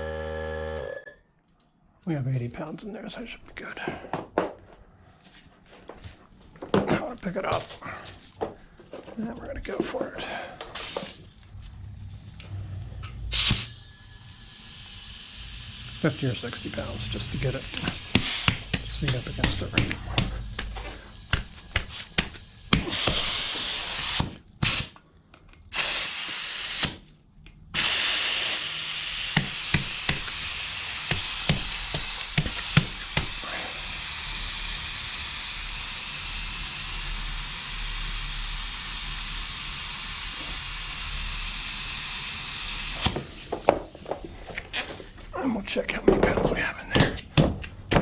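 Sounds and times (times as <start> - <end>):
compressed air hissing: 10.3 - 25.0, 25.7 - 27.1, 27.8 - 48.0.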